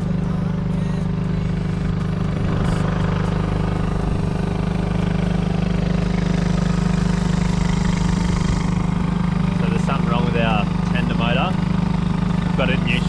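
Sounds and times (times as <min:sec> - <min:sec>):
outboard motor droning: 0:00.0 - 0:13.0.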